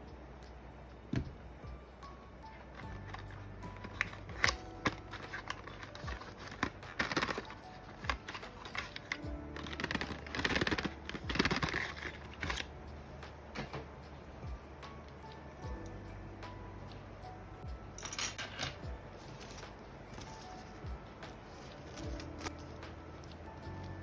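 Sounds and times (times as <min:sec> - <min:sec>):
background music: 0:00.0 - 0:24.0
packaging rustling: 0:02.6 - 0:12.7, 0:21.5 - 0:22.6.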